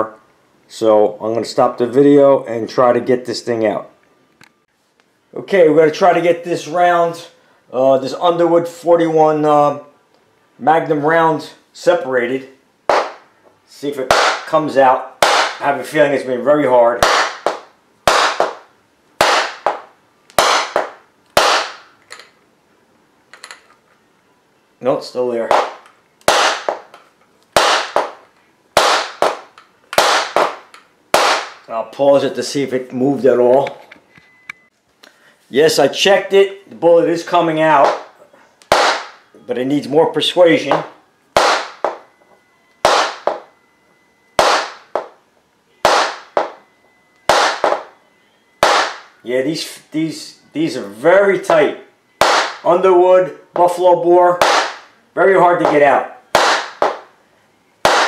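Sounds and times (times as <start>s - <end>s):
hammer blows cracking with ringing: 12.9s - 13.3s, 14.0s - 14.6s, 15.2s - 15.8s, 16.9s - 22.0s, 25.4s - 31.7s, 37.6s - 39.4s, 40.6s - 42.2s, 42.8s - 43.6s, 44.4s - 45.2s, 45.8s - 48.0s, 48.6s - 49.2s, 51.4s - 52.8s, 53.6s - 57.1s.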